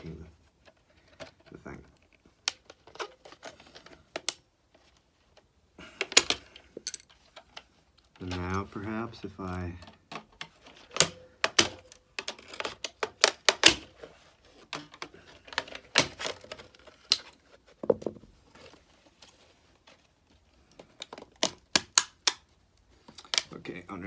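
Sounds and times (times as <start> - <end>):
plastic casing clicks and knocks: 9.7 - 14.0, 14.7 - 18.2, 20.7 - 22.5.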